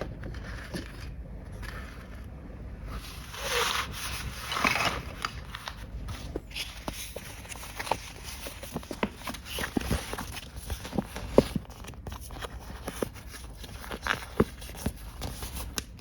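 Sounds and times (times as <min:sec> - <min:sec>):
rustling: 0:00.0 - 0:15.9
plastic toy rubbing and scraping: 0:03.0 - 0:11.7.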